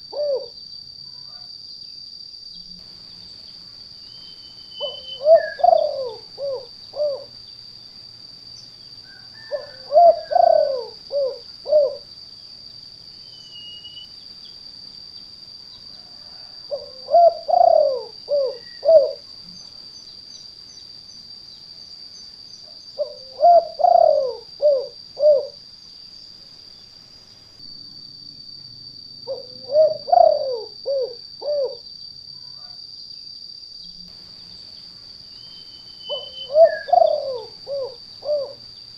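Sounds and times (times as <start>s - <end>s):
dove cooing: 0.0s - 0.6s, 4.8s - 7.4s, 9.3s - 12.1s, 16.3s - 19.2s, 23.0s - 25.6s, 29.2s - 31.8s, 36.0s - 38.7s
faint high-pitched whine: 0.0s - 38.9s.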